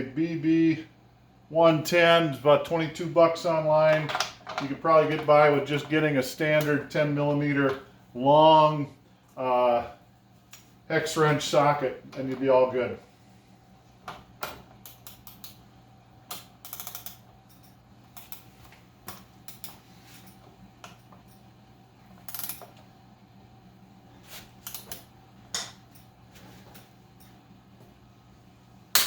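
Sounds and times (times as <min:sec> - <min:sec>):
faint steady hum: 0:00.0 - 0:29.0
torque wrench ratchet clicks: 0:16.6 - 0:18.4.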